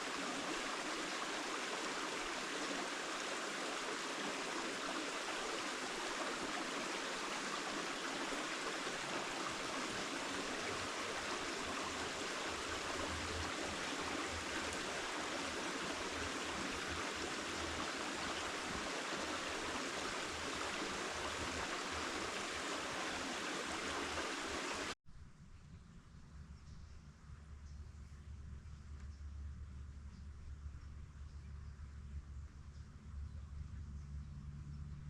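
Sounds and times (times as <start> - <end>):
creek water rushing: 0.0 - 25.0
faint low rumble: 25.1 - 35.0.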